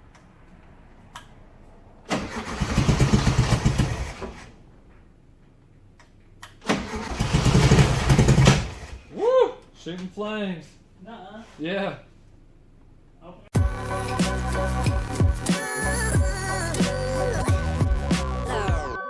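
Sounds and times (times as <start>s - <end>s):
car engine sputtering: 2.0s - 4.8s, 6.7s - 9.1s.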